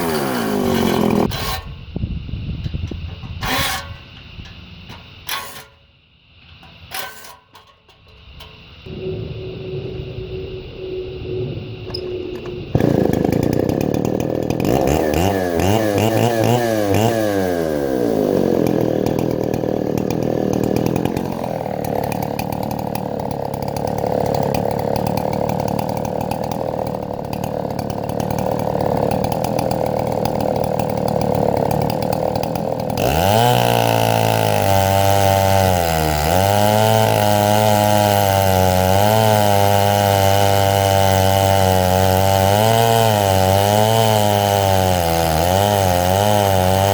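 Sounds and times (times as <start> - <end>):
chainsaw cutting wood: 0.0 - 1.8, 2.9 - 5.8, 6.5 - 8.8, 12.4 - 46.9.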